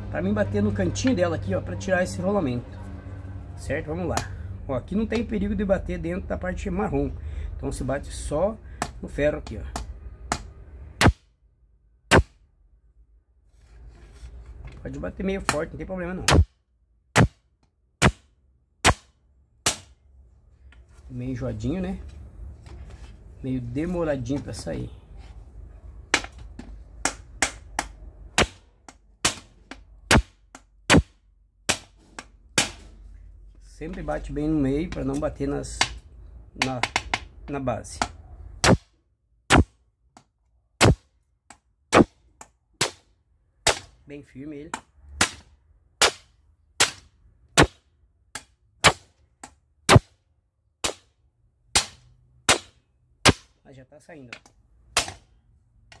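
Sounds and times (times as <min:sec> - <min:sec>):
hammer striking iron: 0:30.1 - 0:32.0.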